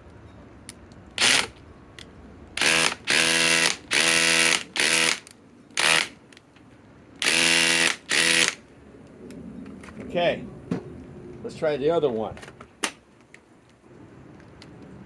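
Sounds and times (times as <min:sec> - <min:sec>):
impact driver buzzing rattle: 0:01.2 - 0:01.6, 0:02.6 - 0:06.2, 0:07.2 - 0:08.6.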